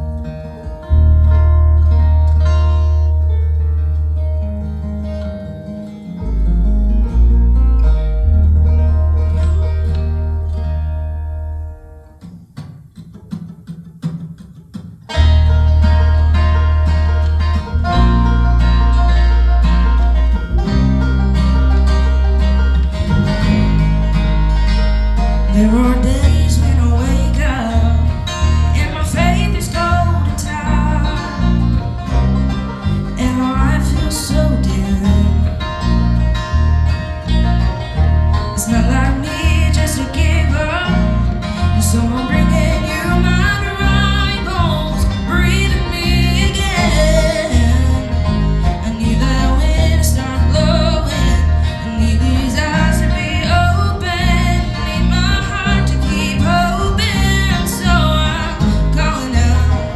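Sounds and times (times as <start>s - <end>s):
plucked acoustic strings: 0.0s - 59.9s
steady low beat: 6.2s - 12.2s, 15.1s - 59.9s
person singing: 25.5s - 36.1s, 38.4s - 59.9s.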